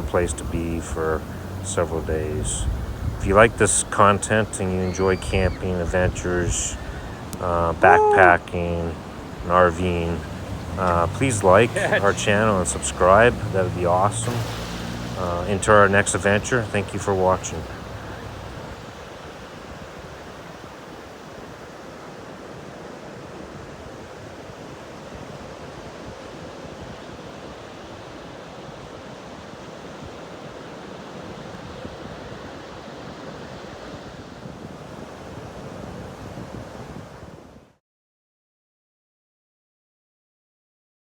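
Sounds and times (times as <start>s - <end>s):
wind on microphone: 0.0s - 20.3s, 33.3s - 37.7s
ocean surf washing: 0.0s - 37.7s.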